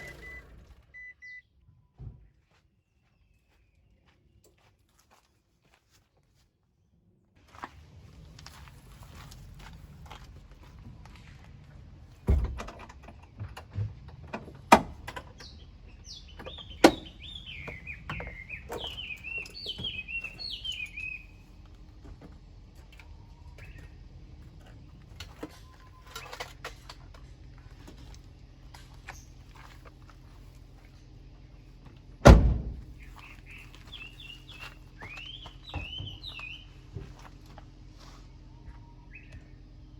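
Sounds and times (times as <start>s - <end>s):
small bird twittering: 15.4s - 21.3s
heavy thunks: 32.2s - 33.1s.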